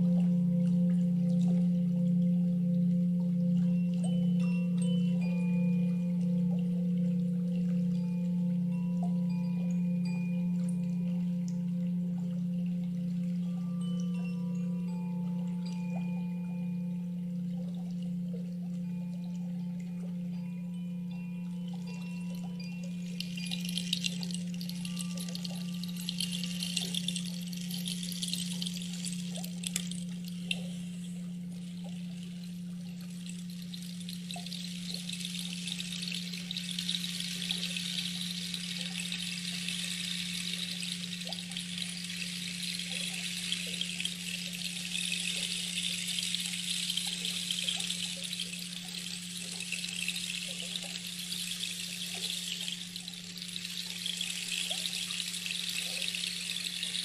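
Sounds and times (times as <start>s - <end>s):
low hum: 0.0s - 57.0s
water flowing: 0.0s - 57.0s.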